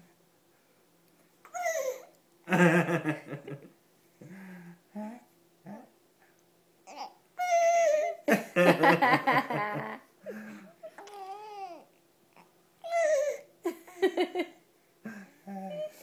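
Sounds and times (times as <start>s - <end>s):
baby squealing and cooing: 6.9s - 8.2s, 10.9s - 13.5s.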